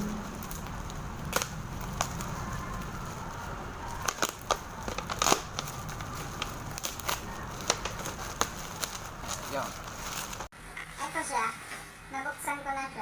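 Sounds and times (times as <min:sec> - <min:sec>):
toy packaging crackling and clicking: 0:00.4 - 0:10.5.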